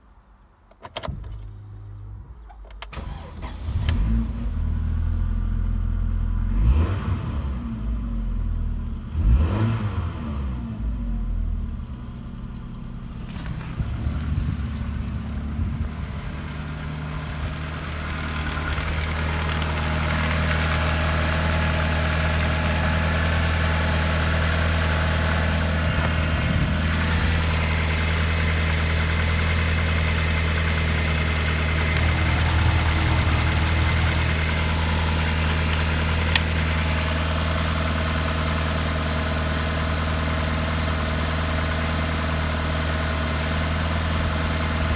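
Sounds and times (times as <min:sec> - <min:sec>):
car engine starting and idling: 0:00.8 - 0:44.9
clicks: 0:31.5 - 0:36.9.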